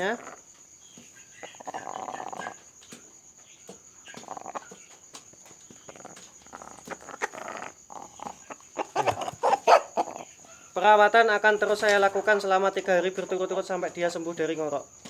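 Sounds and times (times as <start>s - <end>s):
chicken breathing with rattling snore: 0.0s - 0.7s, 1.4s - 2.6s, 4.1s - 4.8s, 5.7s - 10.8s.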